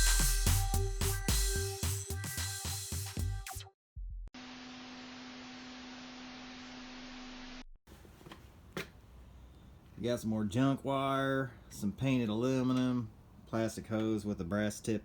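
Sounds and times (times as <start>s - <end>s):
music: 0.0s - 4.3s.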